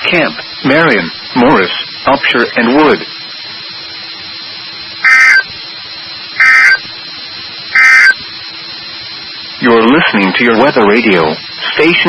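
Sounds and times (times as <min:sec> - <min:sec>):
radio hiss: 0:00.0 - 0:12.0
digital data tone bursts: 0:05.0 - 0:05.6, 0:06.3 - 0:06.9, 0:07.7 - 0:08.2.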